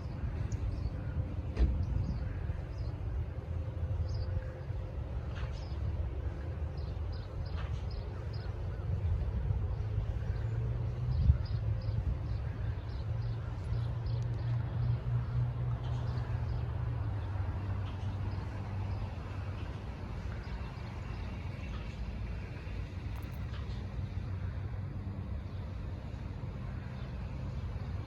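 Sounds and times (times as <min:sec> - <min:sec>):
steady low hum: 0:00.0 - 0:28.0
swallows twittering: 0:04.0 - 0:21.9.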